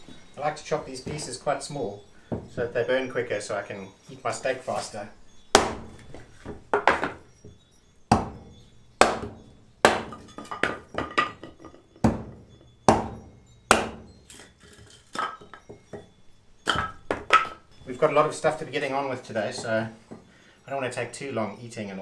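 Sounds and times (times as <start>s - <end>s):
firewood chopping: 0.9s - 1.5s, 2.2s - 2.7s, 4.4s - 7.4s, 8.1s - 16.1s, 16.7s - 17.6s.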